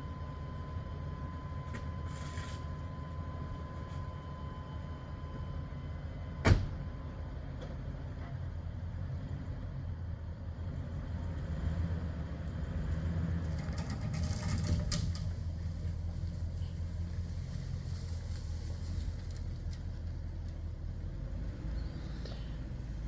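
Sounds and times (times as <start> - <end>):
car engine rumble inside cabin: 14.6 - 23.0.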